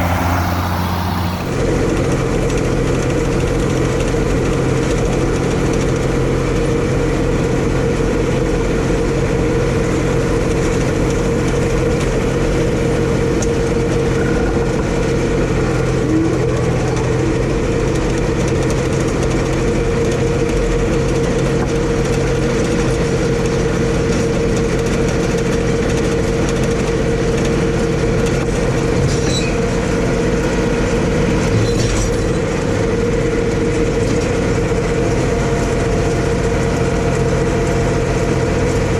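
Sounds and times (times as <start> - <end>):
tractor engine droning: 0.0 - 1.8.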